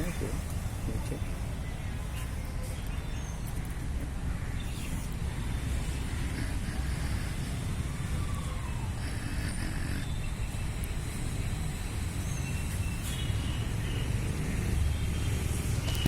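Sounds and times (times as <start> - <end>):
low outdoor rumble: 3.7 - 12.1.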